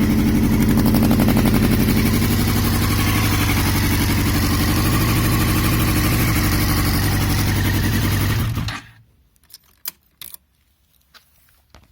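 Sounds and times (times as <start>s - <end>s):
motorcycle engine misfiring: 0.0s - 9.0s.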